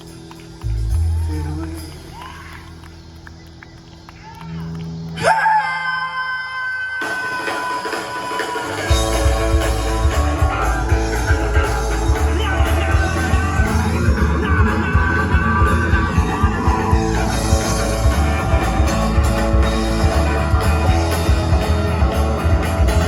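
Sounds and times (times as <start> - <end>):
heavy bass: 0.0 - 2.2, 8.9 - 23.0
electric guitar ringing notes: 8.9 - 23.0.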